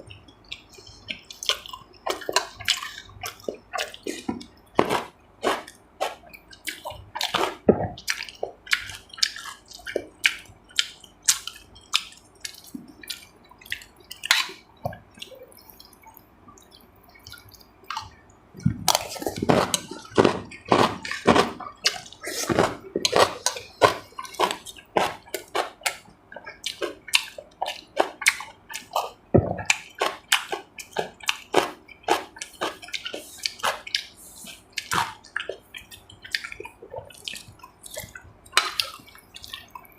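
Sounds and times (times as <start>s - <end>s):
wet chewing and lip smacking: 0.0s - 39.9s.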